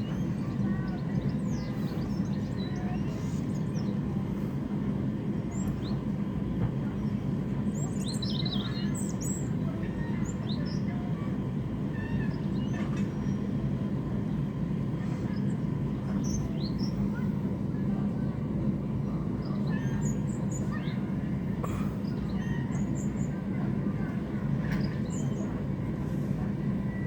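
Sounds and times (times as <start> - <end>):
birds chirping: 0.0 - 4.0, 14.2 - 17.3, 19.4 - 25.6.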